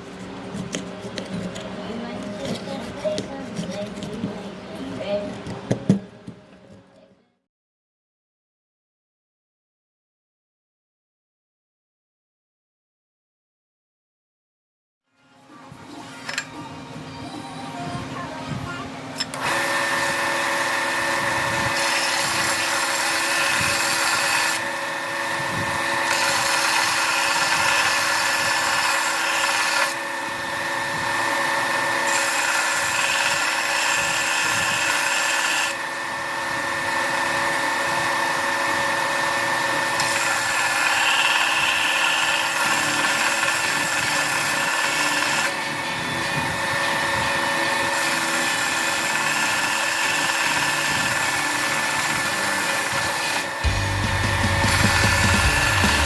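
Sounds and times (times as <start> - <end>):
electric power tool whining: 19.2 - 56.0.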